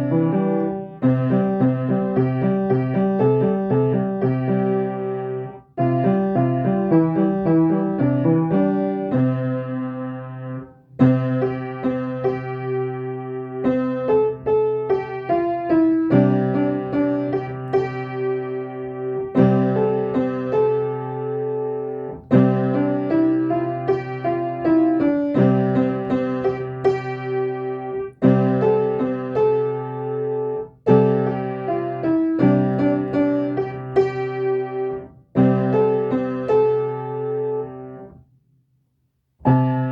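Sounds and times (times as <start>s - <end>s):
solo piano chords: 0.0s - 38.4s, 39.3s - 39.9s.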